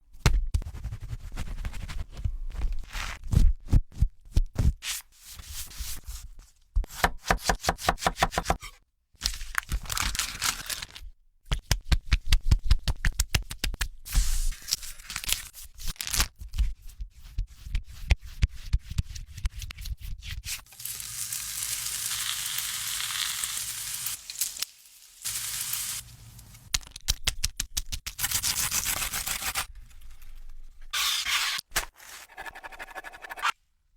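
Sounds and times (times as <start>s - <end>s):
scraping and rubbing: 28.4s - 33.6s.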